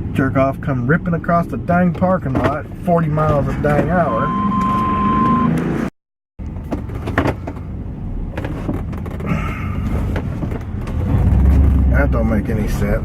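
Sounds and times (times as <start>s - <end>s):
low vehicle rumble: 0.0s - 13.0s
brief high tone: 4.1s - 5.6s.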